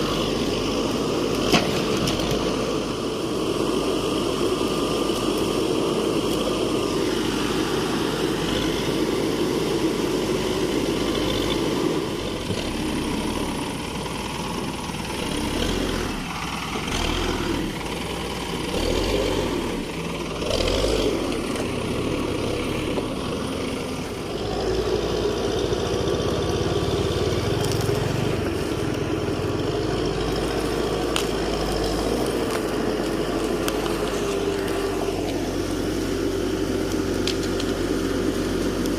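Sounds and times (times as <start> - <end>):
diesel engine running: 0.0 - 38.9.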